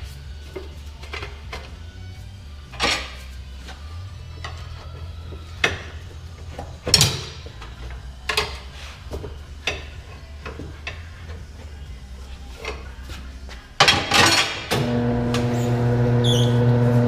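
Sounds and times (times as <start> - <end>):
tools clinking and knocking: 2.7 - 3.2, 4.4 - 11.8, 13.8 - 14.7.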